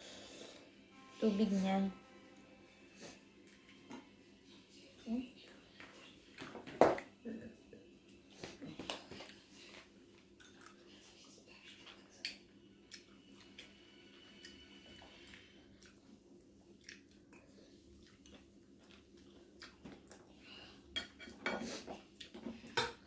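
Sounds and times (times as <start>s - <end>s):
faint low hum: 0.0s - 23.0s
person chewing food: 8.4s - 20.7s, 21.7s - 22.8s.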